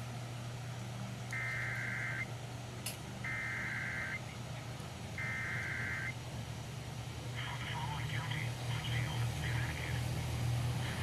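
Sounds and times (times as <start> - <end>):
low hum: 0.0 - 11.0
digital data tone bursts: 1.4 - 2.3, 3.3 - 4.2, 5.2 - 6.2.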